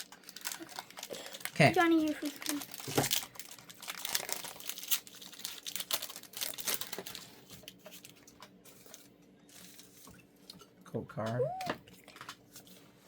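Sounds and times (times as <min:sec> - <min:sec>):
foil wrapper crinkling: 0:00.0 - 0:10.1.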